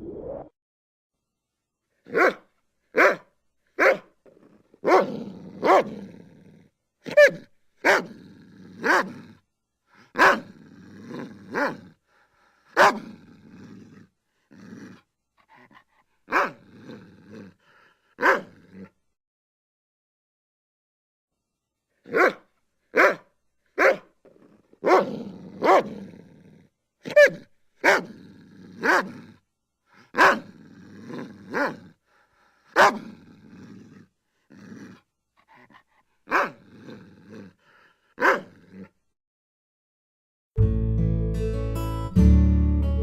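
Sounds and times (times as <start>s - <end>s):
dog barking: 2.1s - 4.1s, 4.8s - 6.0s, 7.1s - 8.2s, 8.8s - 9.2s, 10.2s - 10.5s, 11.5s - 11.8s, 12.8s - 13.1s, 16.3s - 16.6s, 18.2s - 18.8s, 22.1s - 24.1s, 24.8s - 26.0s, 27.1s - 28.2s, 28.8s - 29.2s, 30.1s - 30.5s, 31.5s - 31.8s, 32.8s - 33.2s, 36.3s - 36.6s, 38.2s - 38.8s
dog snarling and growling: 4.3s - 9.4s, 10.0s - 12.1s, 12.7s - 19.0s, 23.8s - 39.0s.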